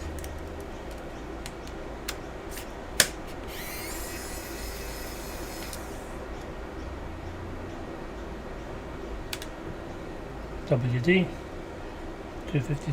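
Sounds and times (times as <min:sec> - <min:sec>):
plastic and metal clicks: 0:00.0 - 0:04.3, 0:09.3 - 0:09.6
steady low hum: 0:00.0 - 0:12.9.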